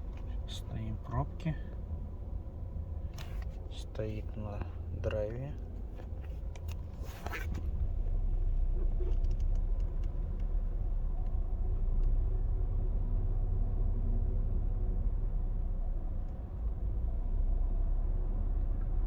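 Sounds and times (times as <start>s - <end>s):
car cabin engine rumble: 0.0s - 13.0s.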